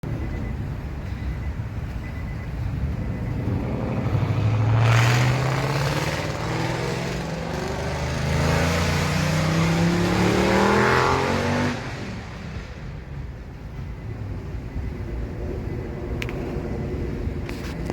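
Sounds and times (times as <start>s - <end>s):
car engine accelerating: 3.1s - 12.4s.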